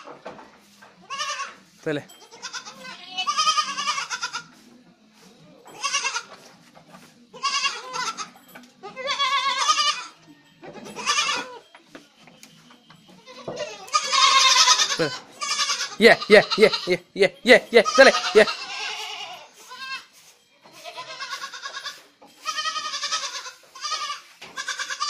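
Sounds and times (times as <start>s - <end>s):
goats bleating: 1.1s - 1.6s, 2.3s - 4.5s, 5.7s - 6.3s, 7.4s - 10.2s, 11.0s - 11.6s, 13.2s - 20.1s, 20.8s - 25.0s.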